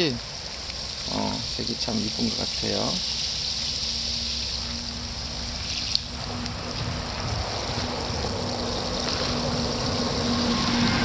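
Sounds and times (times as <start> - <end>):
water spraying from a hose: 0.0 - 11.0
low hum: 3.0 - 11.0.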